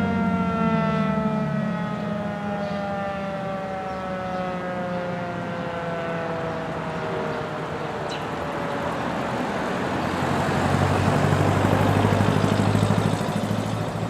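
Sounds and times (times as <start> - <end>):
mechanical siren winding down: 0.0 - 10.3.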